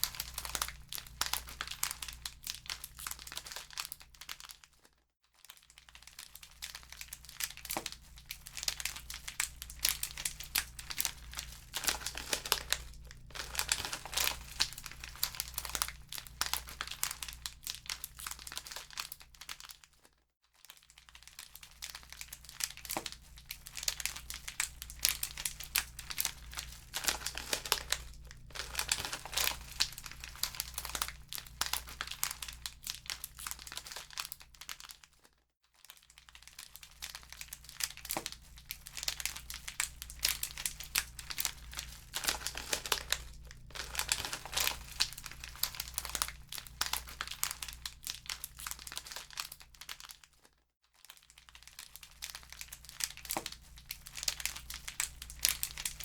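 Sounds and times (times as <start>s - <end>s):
wood fire crackling and popping: 8.6s - 18.3s, 22.8s - 34.2s, 37.8s - 49.4s
low steady rumble: 9.1s - 16.8s, 24.1s - 32.5s, 38.8s - 48.0s.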